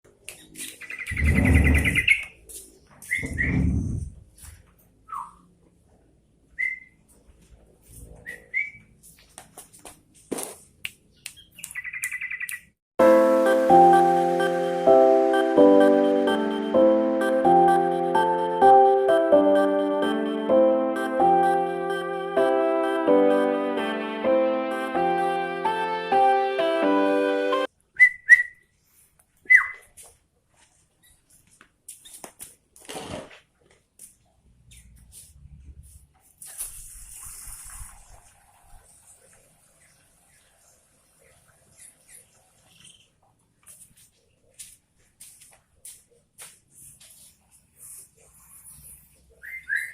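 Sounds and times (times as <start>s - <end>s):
bird whistling and trilling: 0.4s - 2.3s, 3.0s - 3.6s, 5.1s - 5.4s, 6.6s - 7.0s, 8.3s - 8.8s, 28.0s - 28.6s, 29.4s - 29.8s, 49.4s - 49.9s
bird whistled call notes: 6.6s - 7.0s, 29.5s - 29.8s, 49.4s - 49.9s.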